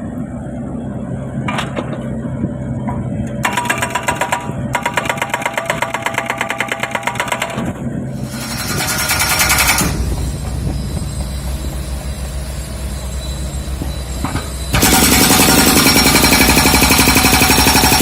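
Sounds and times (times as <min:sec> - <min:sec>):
excavator diesel engine running: 0:00.0 - 0:18.0
hydraulic breaker hammering: 0:03.4 - 0:10.2, 0:14.2 - 0:18.0.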